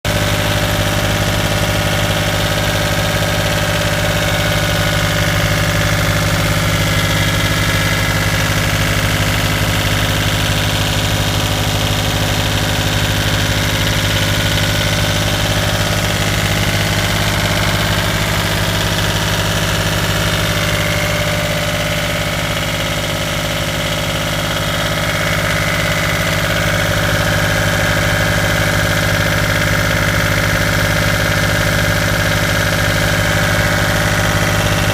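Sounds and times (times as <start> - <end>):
diesel engine running: 0.0 - 34.9.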